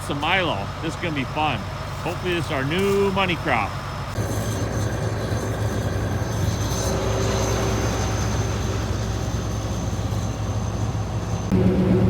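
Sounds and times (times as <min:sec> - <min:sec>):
combine engine drone: 0:00.0 - 0:12.0
thin high whine: 0:04.1 - 0:12.0.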